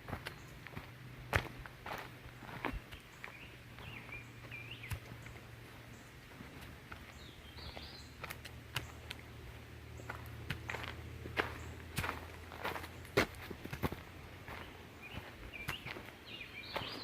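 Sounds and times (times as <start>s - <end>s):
footsteps on a trail: 0.0s - 17.0s
songbird warbling: 2.9s - 6.1s.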